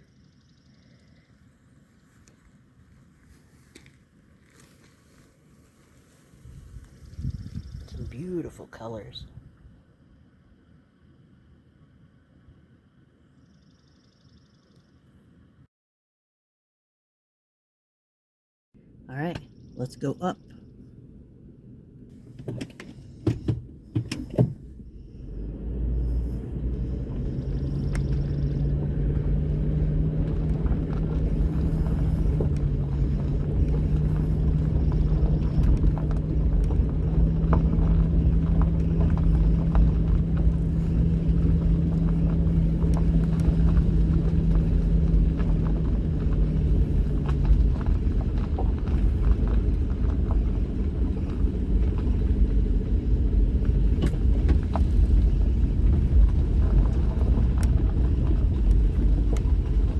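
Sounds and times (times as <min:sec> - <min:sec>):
engine hum: 0:00.0 - 0:15.7, 0:18.8 - 0:59.9
vehicle engine and road rumble: 0:00.0 - 0:15.7, 0:18.8 - 0:59.9
small clicks and ticks: 0:26.1 - 0:53.0, 0:53.6 - 0:59.9.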